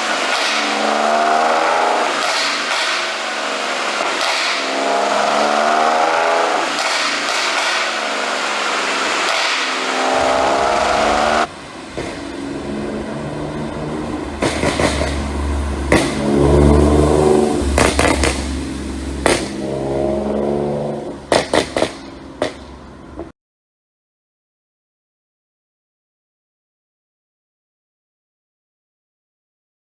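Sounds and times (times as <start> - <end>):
car engine revving: 0.0 - 23.3
exhaust pops and crackles: 0.0 - 23.3.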